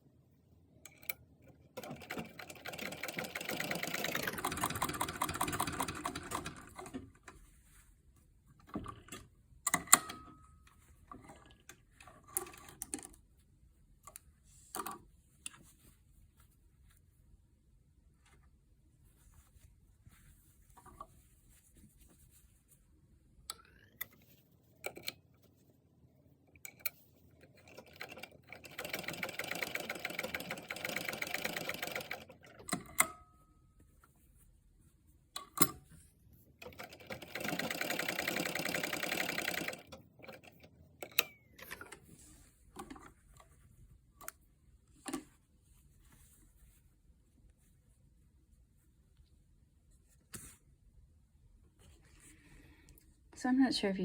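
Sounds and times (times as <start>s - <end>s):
sewing machine stitching: 1.8s - 7.0s, 27.6s - 32.9s, 36.6s - 41.9s.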